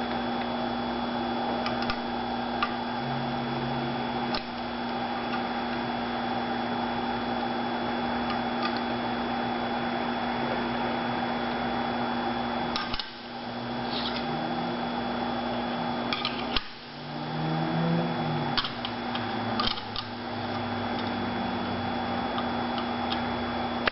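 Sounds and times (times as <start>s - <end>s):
sharpening machine humming: 0.0s - 23.9s.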